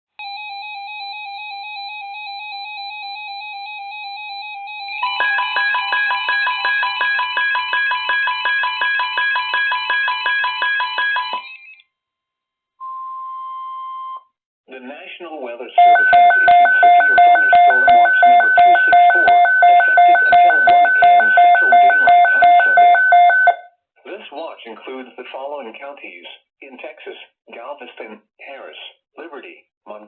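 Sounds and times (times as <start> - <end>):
warbling electronic alarm: 0.2 - 11.8, 15.8 - 23.6
rapid beeping: 15.8 - 23.6
steady attention tone: 15.8 - 23.6.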